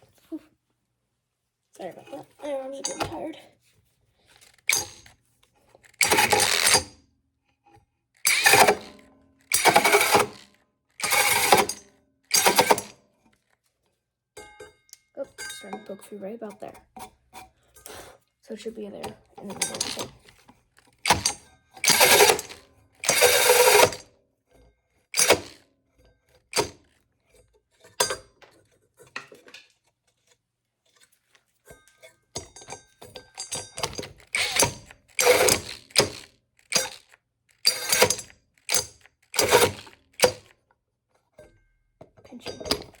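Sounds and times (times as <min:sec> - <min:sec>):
cordless drill with hole saw: 0:05.9 - 0:06.9, 0:08.2 - 0:10.4, 0:11.0 - 0:12.9, 0:21.0 - 0:24.0, 0:25.2 - 0:25.6, 0:33.8 - 0:40.5.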